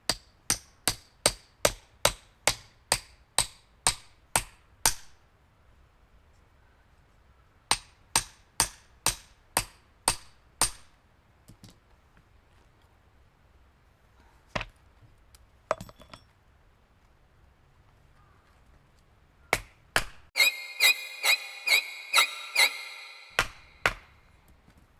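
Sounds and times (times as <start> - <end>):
hammer striking metal wedge: 20.4 - 24.1.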